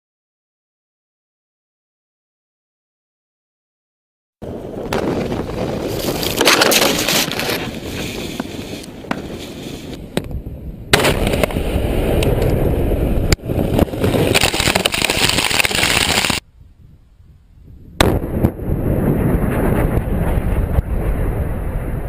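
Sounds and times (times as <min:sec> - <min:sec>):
explosions roaring: 0:09.0 - 0:16.4, 0:18.0 - 0:22.0.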